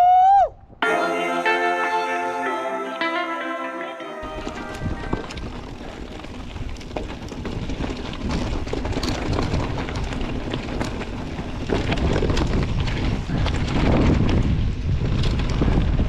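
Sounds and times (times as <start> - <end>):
wind buffeting microphone: 11.8 - 16.0.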